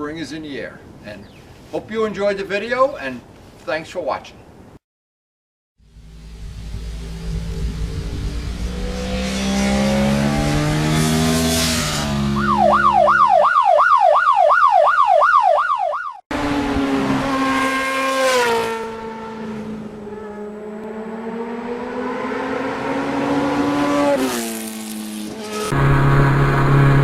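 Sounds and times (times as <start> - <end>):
vehicle engines: 5.8 - 13.2, 16.3 - 27.0
siren warbling: 12.3 - 16.2.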